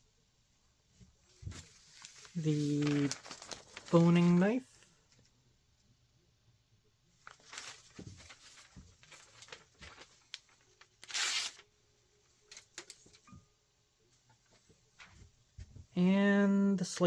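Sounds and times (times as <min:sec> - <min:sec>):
knife slicing paper: 0:11.0 - 0:11.6.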